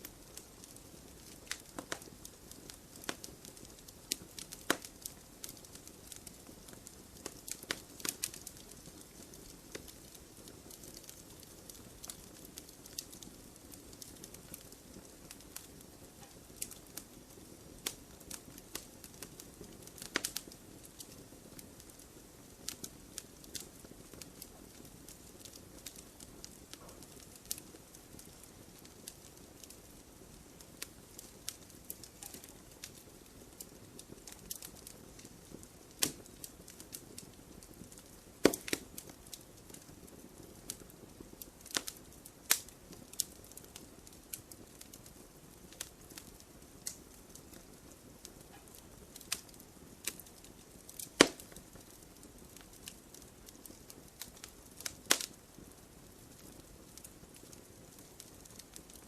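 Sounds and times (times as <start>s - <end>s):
campfire crackling and popping: 0.0s - 59.0s.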